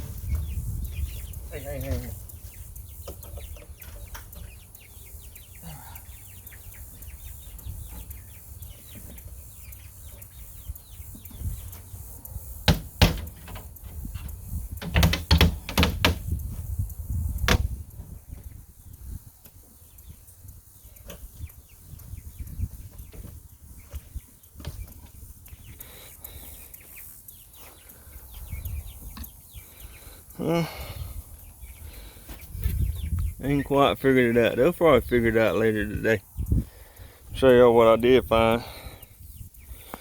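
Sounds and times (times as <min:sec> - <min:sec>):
wooden door knocking and rattling: 0:12.7 - 0:13.6, 0:14.8 - 0:16.2.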